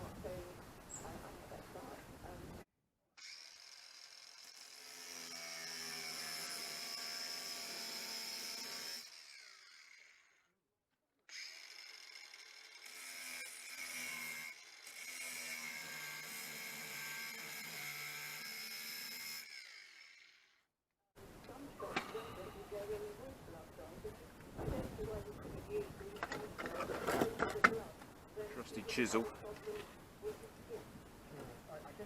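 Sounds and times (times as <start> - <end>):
cutting tool whining: 3.2 - 10.5, 11.3 - 20.6.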